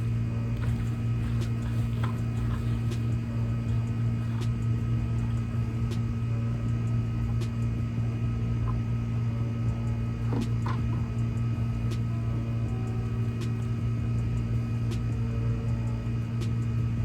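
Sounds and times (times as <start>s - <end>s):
air conditioner humming: 0.0s - 17.0s.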